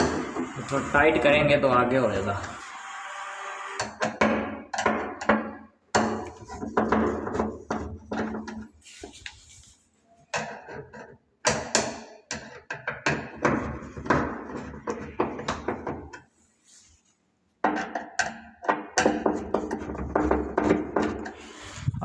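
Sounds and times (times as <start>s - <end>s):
sharp knocks and clatter: 4.0s - 8.7s, 10.4s - 16.2s, 17.6s - 21.4s.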